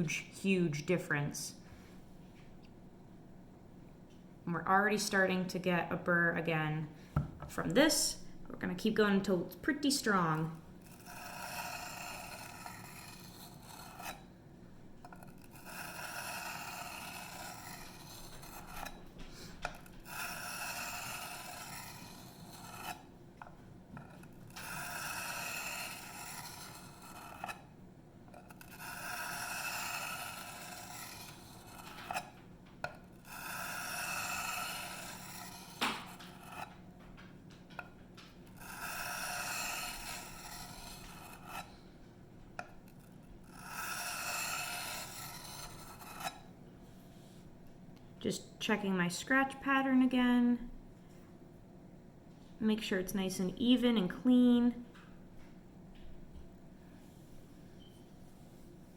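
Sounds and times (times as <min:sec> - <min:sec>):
knife scraping on sharpening stone: 0:10.8 - 0:14.3, 0:15.1 - 0:19.0, 0:19.7 - 0:23.0, 0:24.0 - 0:27.7, 0:28.4 - 0:32.3, 0:33.2 - 0:36.7, 0:38.6 - 0:41.7, 0:43.0 - 0:46.5.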